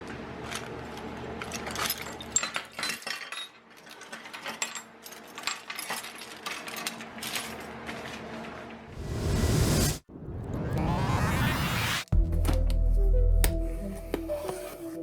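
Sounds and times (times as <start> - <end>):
small metal parts clinking: 1.4 - 7.7.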